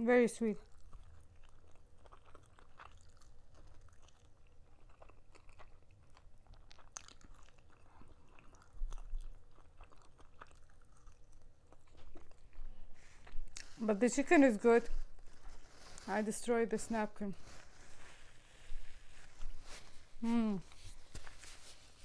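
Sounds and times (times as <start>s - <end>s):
person chewing crunchy food: 0.6s - 13.8s.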